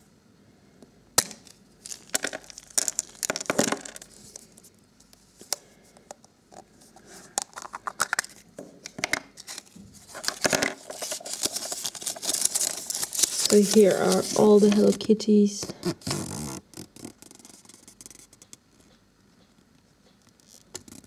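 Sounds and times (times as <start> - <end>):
wrapping being torn and crinkled: 1.3 - 4.6, 9.4 - 15.0.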